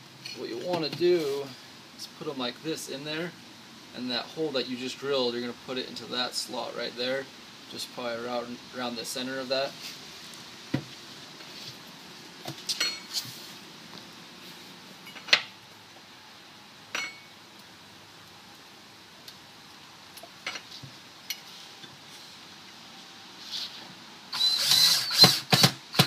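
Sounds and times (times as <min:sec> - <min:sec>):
power drill driving screw: 0:24.3 - 0:26.0.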